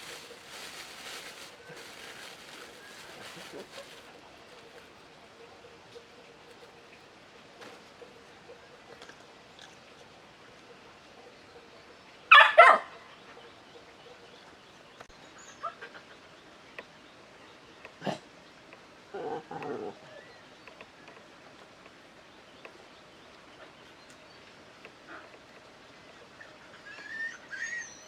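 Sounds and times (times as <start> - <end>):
dog barking: 12.3 - 13.0.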